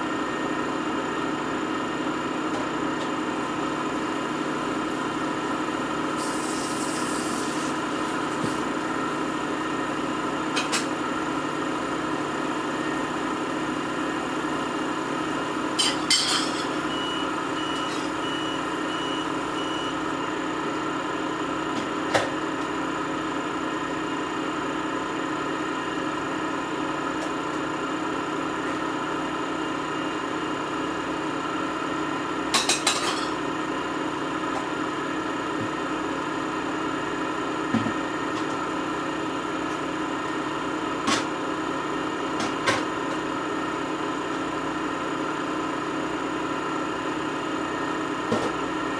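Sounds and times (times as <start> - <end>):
washing machine motor hum: 16.8 - 48.9.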